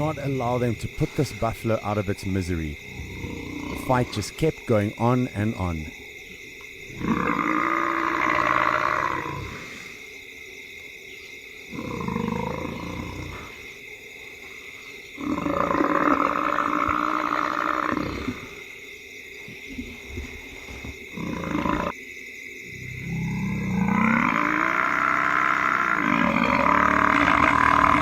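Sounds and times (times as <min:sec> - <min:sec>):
buffalo bellowing: 0:02.4 - 0:05.7, 0:23.0 - 0:28.0
lions growling and snarling: 0:02.8 - 0:04.2, 0:06.9 - 0:09.9, 0:11.7 - 0:13.7, 0:15.2 - 0:18.6, 0:19.7 - 0:21.9, 0:23.0 - 0:28.0.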